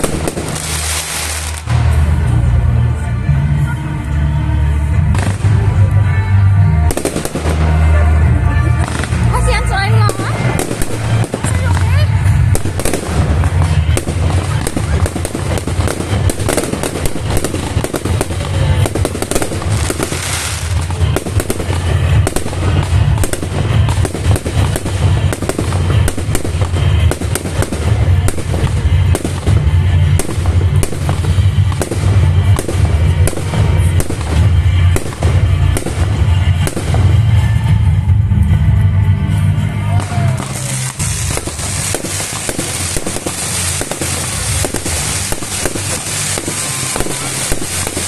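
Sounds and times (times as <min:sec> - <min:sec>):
hissing firework burst: 0:00.0 - 0:02.2, 0:40.2 - 0:48.0
fireworks bangs and crackling: 0:00.0 - 0:48.0
music with pulsing bass: 0:00.0 - 0:48.0.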